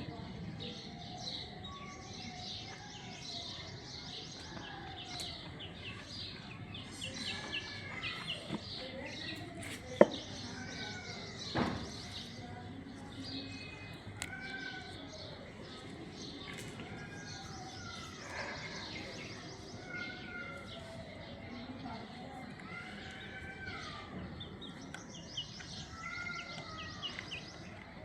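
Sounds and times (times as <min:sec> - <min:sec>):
small birds chirping: 0:00.0 - 0:28.0.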